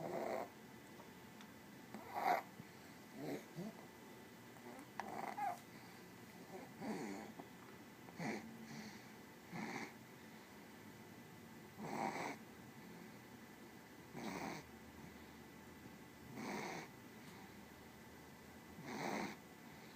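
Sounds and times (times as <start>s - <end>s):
small pet snoring: 0.0s - 0.5s, 1.9s - 2.5s, 3.1s - 3.8s, 4.6s - 5.6s, 6.4s - 7.4s, 8.2s - 10.0s, 11.8s - 12.4s, 14.1s - 14.7s, 16.3s - 17.0s, 18.8s - 19.9s.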